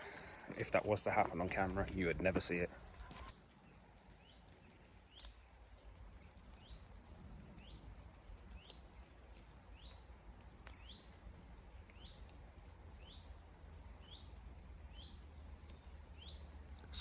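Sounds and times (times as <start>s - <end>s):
faint clicks: 2.9s - 17.0s.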